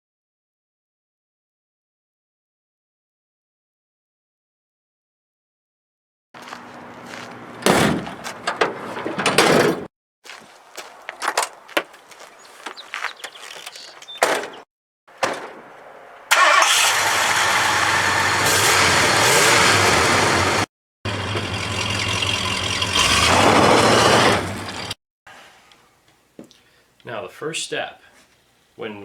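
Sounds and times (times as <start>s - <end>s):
snowblower engine running: 16.3s - 25.0s.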